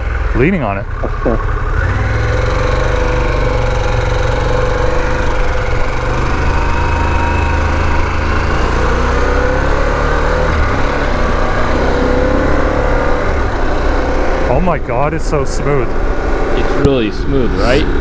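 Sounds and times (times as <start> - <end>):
motorcycle engine running: 0.0 - 16.8.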